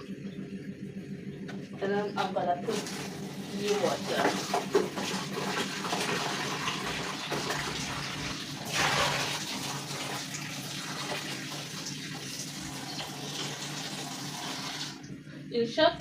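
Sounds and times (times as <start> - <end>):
tap water filling container: 2.7 - 15.1.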